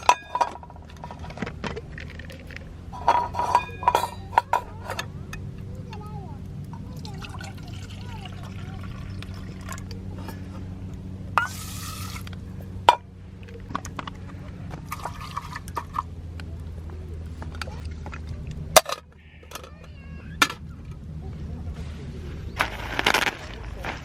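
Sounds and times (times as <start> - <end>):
metal cookware clinking: 0.0 - 10.7, 11.3 - 16.2
steady low rumble: 0.0 - 24.0.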